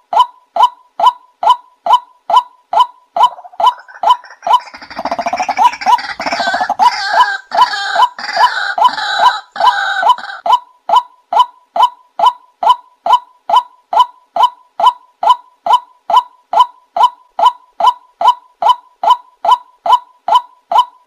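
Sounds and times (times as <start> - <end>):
harsh croaking bird chatter: 3.2 - 10.4.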